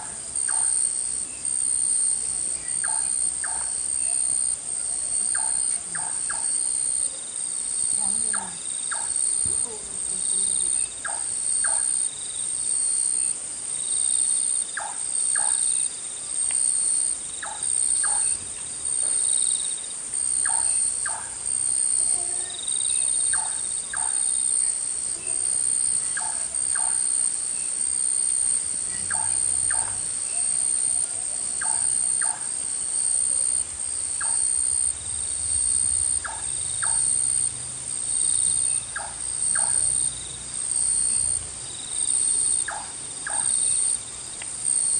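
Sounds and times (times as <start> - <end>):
insects trilling: 0.0 - 44.9.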